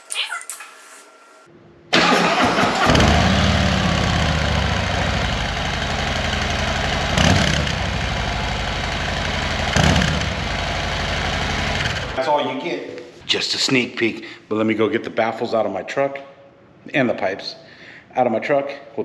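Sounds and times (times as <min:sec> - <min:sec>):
engine throttle blips: 0:02.0 - 0:12.2
motorcycle engine starting and idling: 0:02.0 - 0:12.2.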